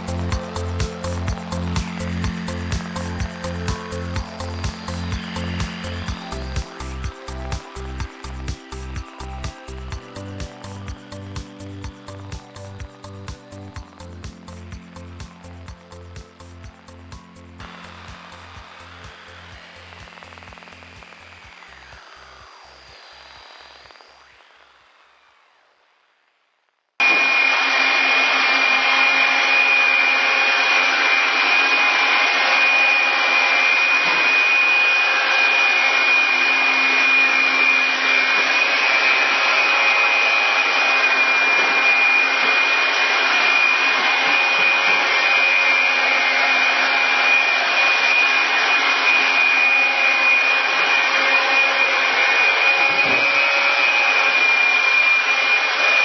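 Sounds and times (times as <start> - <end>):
robot vacuum motor and brushes: 17.6 - 25.5, 34.1 - 56.0.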